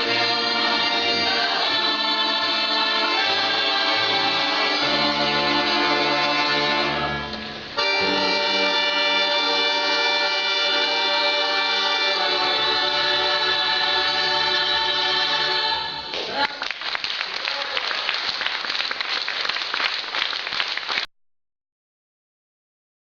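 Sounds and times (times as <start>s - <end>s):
instrumental accompaniment: 0.0s - 16.1s
choir singing: 0.0s - 16.2s.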